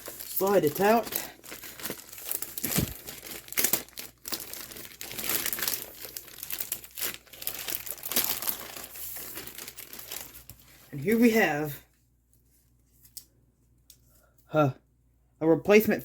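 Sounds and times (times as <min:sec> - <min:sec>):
packaging bag crinkling: 0:00.0 - 0:11.4.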